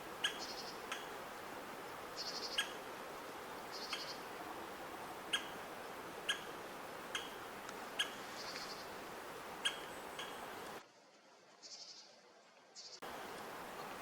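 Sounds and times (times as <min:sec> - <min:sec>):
woodpecker sharp call: 0:00.2 - 0:01.1, 0:02.2 - 0:02.8, 0:03.7 - 0:04.2, 0:05.3 - 0:05.6, 0:06.3 - 0:06.5, 0:07.1 - 0:07.4, 0:08.0 - 0:08.8, 0:09.6 - 0:10.4.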